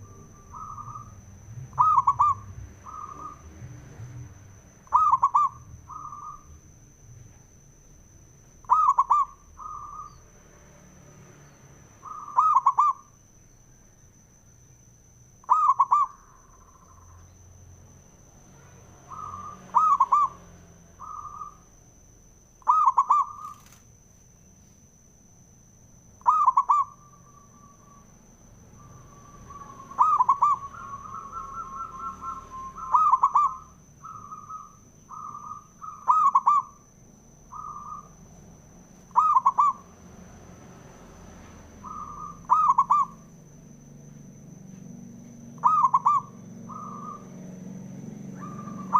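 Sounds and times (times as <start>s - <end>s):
doves cooing: 0.0s - 6.6s, 8.6s - 10.2s, 12.0s - 13.1s, 15.4s - 17.2s, 19.0s - 21.6s, 22.6s - 23.8s, 26.2s - 28.1s, 28.8s - 36.9s, 37.5s - 38.2s, 39.1s - 40.0s, 41.8s - 43.3s, 45.5s - 48.9s
faint high whine: 0.0s - 48.9s.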